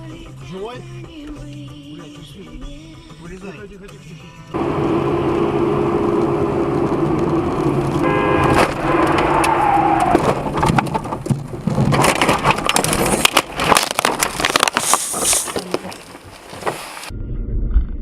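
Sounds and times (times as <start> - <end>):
vehicle running: 4.6 - 13.5
cracking and crunching impacts: 5.7 - 17.1.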